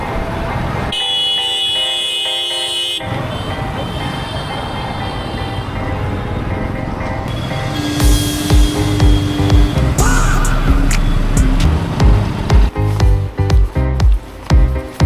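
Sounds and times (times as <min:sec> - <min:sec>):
distant car horns: 0:00.0 - 0:12.7
motorcycle engine and road rumble: 0:03.0 - 0:15.0
electronic music: 0:07.3 - 0:15.0.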